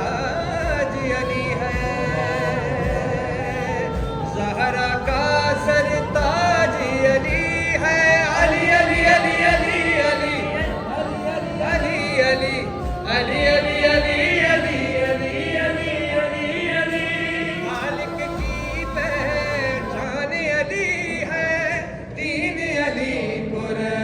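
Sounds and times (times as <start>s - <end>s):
low thuds: 0.0s - 16.2s, 18.1s - 20.0s
man singing a mournful lament: 0.0s - 24.0s.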